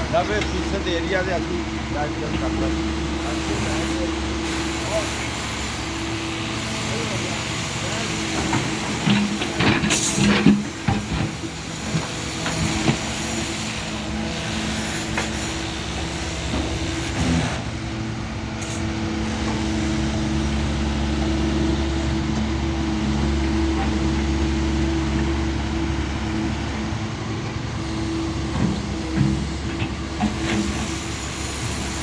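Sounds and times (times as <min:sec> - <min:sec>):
excavator engine and hydraulics: 0:00.0 - 0:32.0
sharp clanks and knocks: 0:08.4 - 0:13.1.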